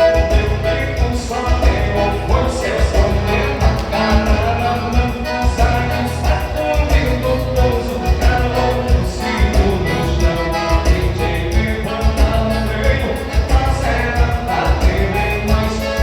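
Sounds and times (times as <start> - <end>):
person singing: 0.0 - 16.0
strong bass beat: 0.0 - 16.0
upbeat music: 0.0 - 16.0.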